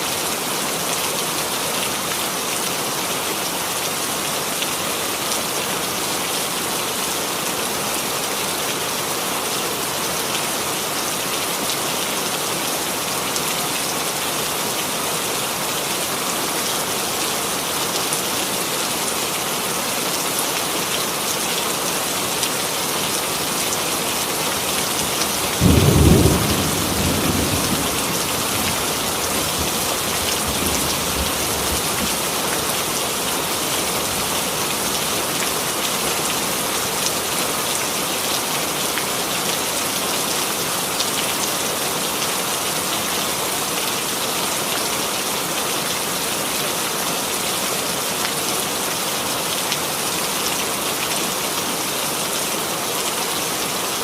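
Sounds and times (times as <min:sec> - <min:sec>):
steady rain hiss: 0:00.0 - 0:54.0
thunderclap rumbling: 0:25.6 - 0:32.1.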